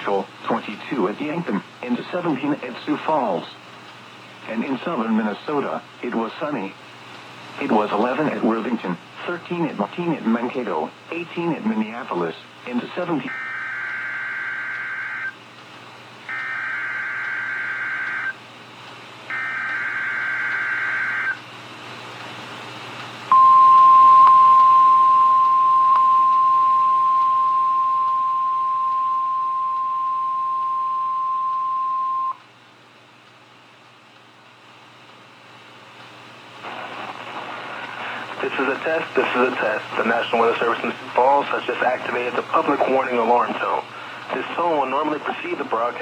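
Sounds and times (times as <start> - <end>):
radio hiss: 0.0 - 18.5, 19.2 - 22.4, 35.5 - 46.0
steady warning alarm tone: 13.3 - 15.4, 16.3 - 18.4, 19.3 - 21.4, 23.3 - 32.4.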